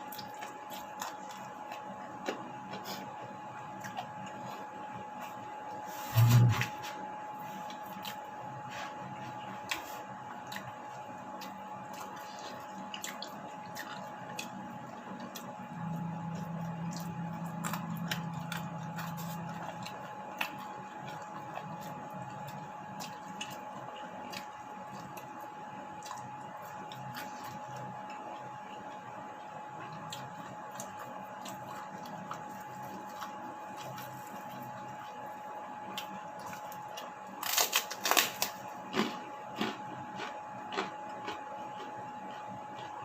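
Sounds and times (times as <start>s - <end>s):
low hum: 6.0s - 6.8s
wet chewing and mouth smacking: 9.6s - 25.4s.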